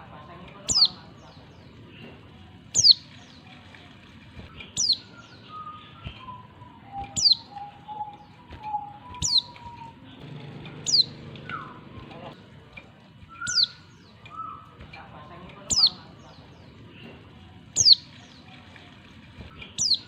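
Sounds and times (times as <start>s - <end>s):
softer whistled bird notes: 4.6s - 10.0s, 13.3s - 14.7s.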